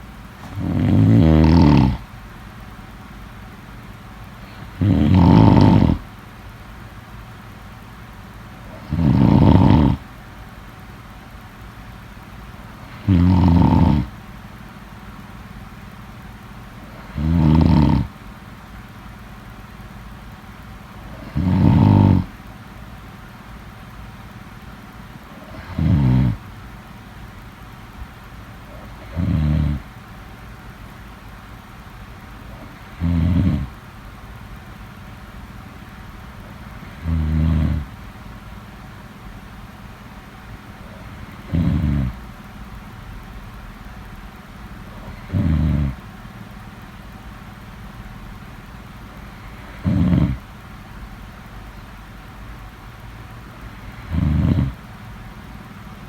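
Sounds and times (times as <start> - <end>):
low background noise: 0.0 - 56.0
loud snores: 0.4 - 2.1, 4.4 - 6.1, 8.6 - 10.0, 12.7 - 14.1, 16.8 - 18.2, 21.0 - 22.4, 25.3 - 26.4, 28.6 - 29.9, 32.5 - 33.8, 36.5 - 38.0, 40.8 - 42.2, 44.9 - 46.0, 49.2 - 50.5, 53.6 - 54.9.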